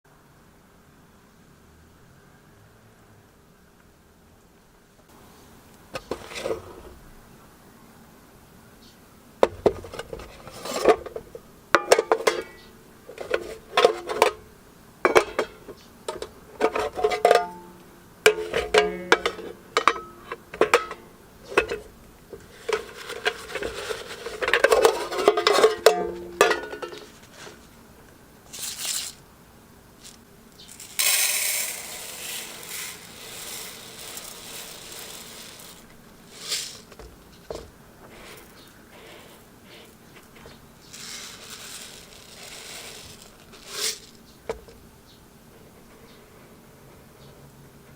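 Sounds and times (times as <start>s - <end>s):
steady rushing hiss: 17.3s - 47.1s
metal mess kit parts clinking: 18.3s - 21.9s, 22.6s - 27.2s, 28.5s - 29.2s, 30.0s - 37.0s.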